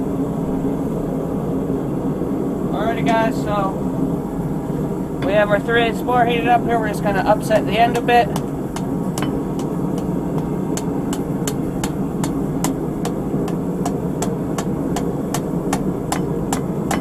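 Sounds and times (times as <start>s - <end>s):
hammer striking steel bar: 7.9s - 17.0s.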